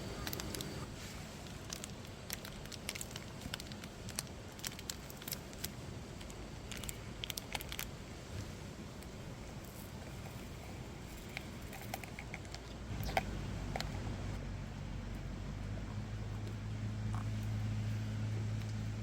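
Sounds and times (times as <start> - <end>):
steady low rumble: 12.8 - 19.0.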